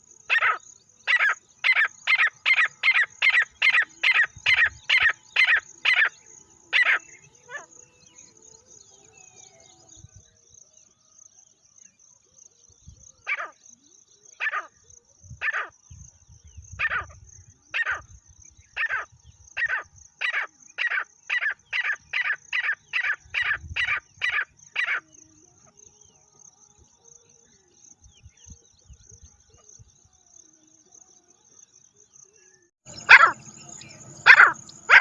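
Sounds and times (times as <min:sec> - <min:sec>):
francolin calling: 0:00.0 - 0:10.1, 0:16.6 - 0:26.2, 0:32.4 - 0:35.0.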